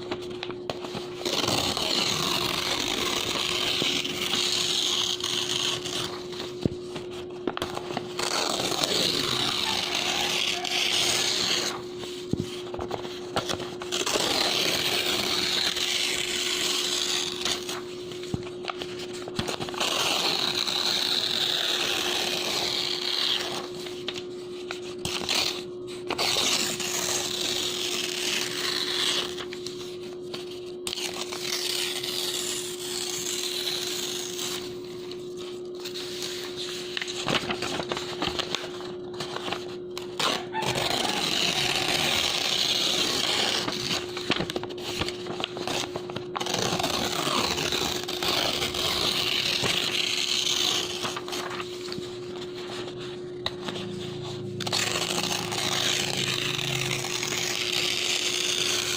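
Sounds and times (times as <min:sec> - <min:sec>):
paper tearing: 0:00.0 - 0:58.9
steady hum: 0:00.0 - 0:58.9.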